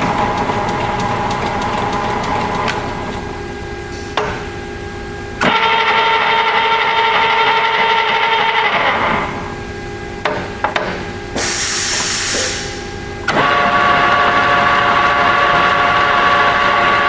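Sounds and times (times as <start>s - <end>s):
metal lathe whining: 0.0s - 3.6s, 5.4s - 9.5s, 11.4s - 17.0s.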